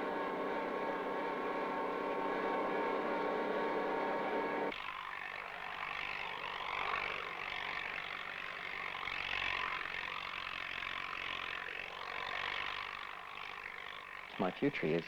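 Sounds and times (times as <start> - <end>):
motor vehicle running: 0.0 - 4.7.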